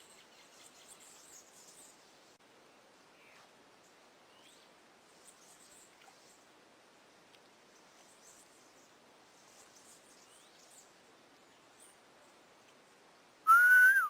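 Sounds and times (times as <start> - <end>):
low hiss: 0.0 - 14.0
high chirps of birds or insects: 13.5 - 14.0
short rising calls: 13.5 - 14.0.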